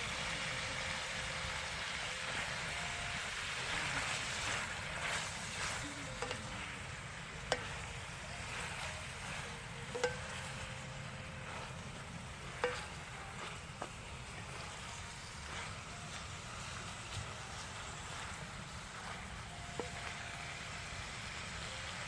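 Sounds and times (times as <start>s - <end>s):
food sizzling in a pan: 0.0s - 22.0s
utensil clinking against pan: 6.2s - 6.6s, 9.8s - 11.7s, 12.4s - 13.6s.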